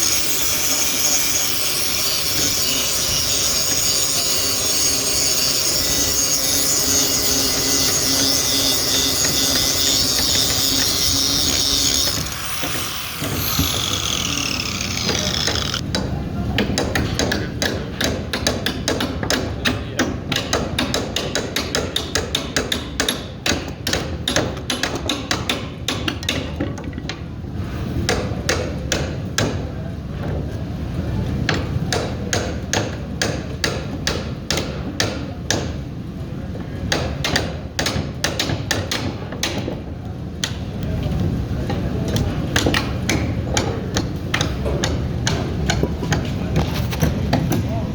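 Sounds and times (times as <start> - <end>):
grinder on metal: 0.0 - 15.8
grinder winding down: 7.2 - 15.8.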